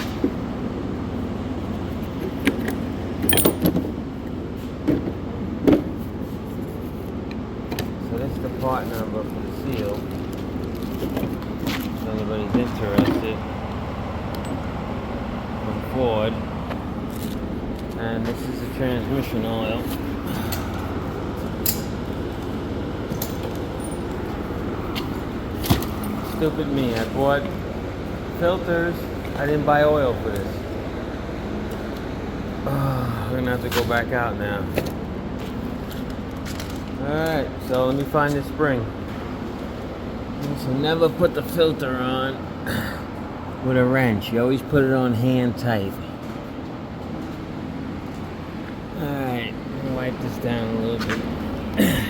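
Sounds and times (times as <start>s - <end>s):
steady low background hum: 0.0s - 52.0s
clicks and clinks of items: 2.5s - 3.9s, 35.9s - 37.0s
sharp metallic clinks and knocks: 2.5s - 3.9s, 23.1s - 26.4s.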